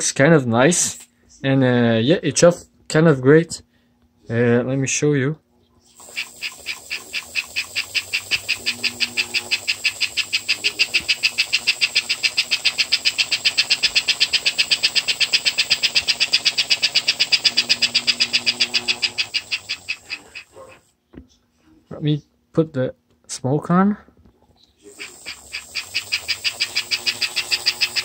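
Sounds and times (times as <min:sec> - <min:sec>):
thin high whine: 0:05.8 - 0:20.8, 0:24.8 - 0:28.0
model steam locomotive chuffing: 0:06.0 - 0:20.7, 0:24.9 - 0:28.0.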